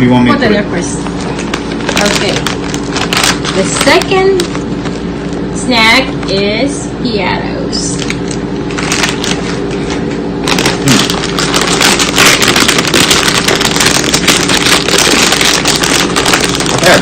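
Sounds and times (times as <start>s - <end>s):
plastic chip bag crinkling: 1.0s - 5.1s, 8.0s - 17.0s.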